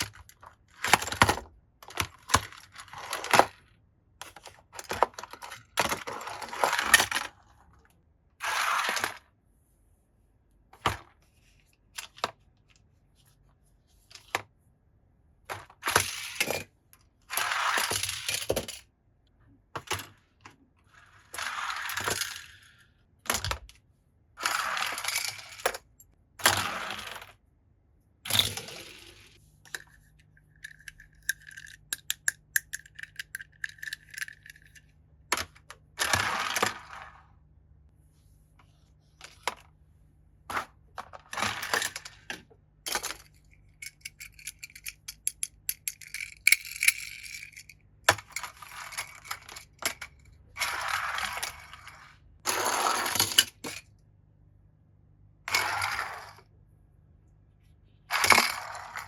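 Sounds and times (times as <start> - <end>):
toy cars clattering: 24.4 - 25.9, 28.3 - 37.2, 41.0 - 53.9, 58.1 - 59.0
sharp clicks and clinks: 29.7 - 34.8.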